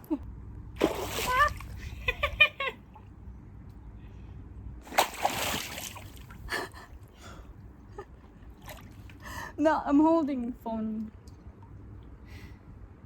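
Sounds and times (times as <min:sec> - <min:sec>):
water splashing and sloshing: 0:00.8 - 0:03.2, 0:04.8 - 0:06.9, 0:08.0 - 0:12.2.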